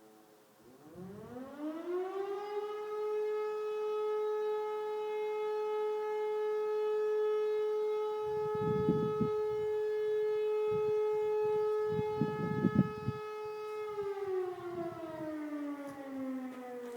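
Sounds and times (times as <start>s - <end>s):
air-raid siren: 0.1s - 16.9s.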